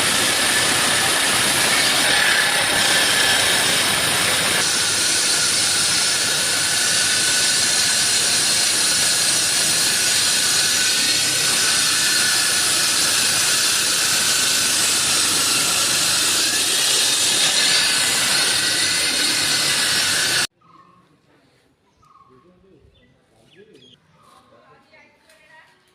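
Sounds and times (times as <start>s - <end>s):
concrete saw grinding: 0.0s - 20.5s.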